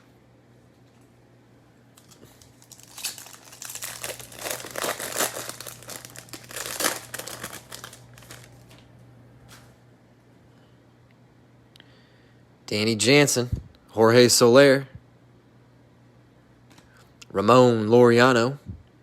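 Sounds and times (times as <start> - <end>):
foil wrapper crinkling and tearing: 2.0 - 8.9.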